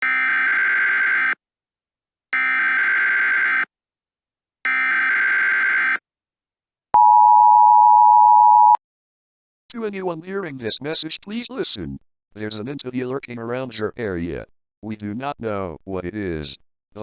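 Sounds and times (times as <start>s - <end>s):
two-tone attention signal: 7.0s - 8.8s.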